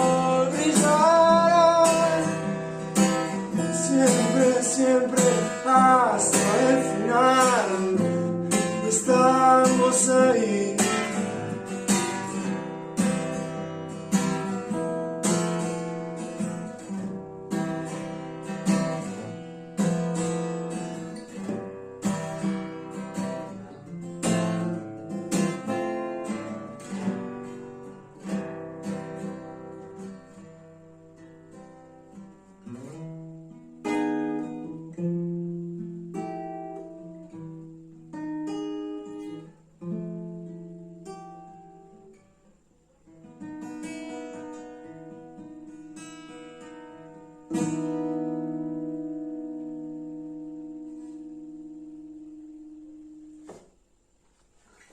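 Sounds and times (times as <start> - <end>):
sliding melody: 0.0 - 13.6
acoustic guitar strumming chords: 0.0 - 54.9.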